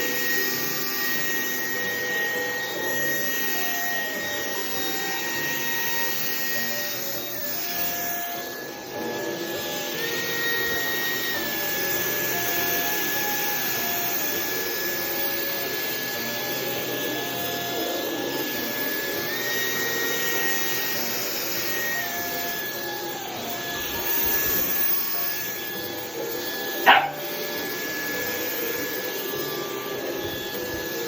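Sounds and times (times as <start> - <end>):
vacuum cleaner running: 0.0 - 31.0.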